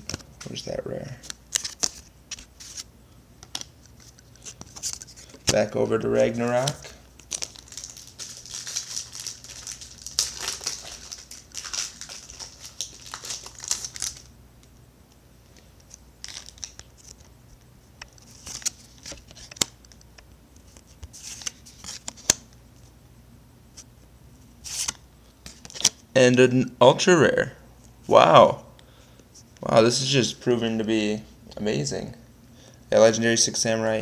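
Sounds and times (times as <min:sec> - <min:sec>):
cards rustling and clicking: 0:00.0 - 0:05.7, 0:06.4 - 0:14.3, 0:15.6 - 0:17.3, 0:17.9 - 0:22.5, 0:24.6 - 0:26.0
foil wrapper crinkling and tearing: 0:06.6 - 0:14.3, 0:16.2 - 0:17.3.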